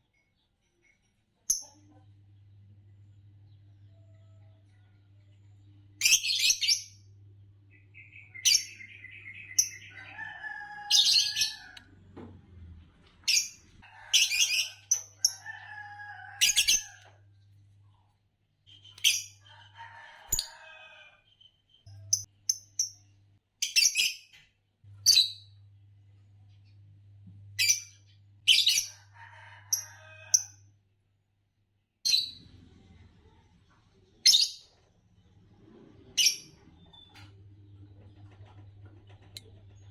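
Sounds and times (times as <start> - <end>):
lovebirds chirping: 5.4 - 11.8, 13.2 - 17.1.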